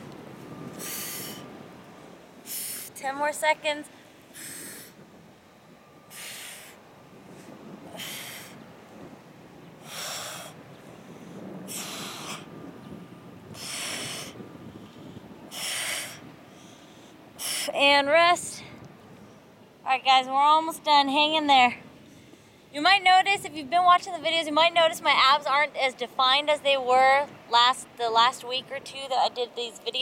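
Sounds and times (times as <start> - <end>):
woman exhaling forcefully: 4.4 - 5.0, 6.1 - 6.8, 7.9 - 8.6, 11.7 - 12.5, 13.6 - 14.4, 15.5 - 16.2.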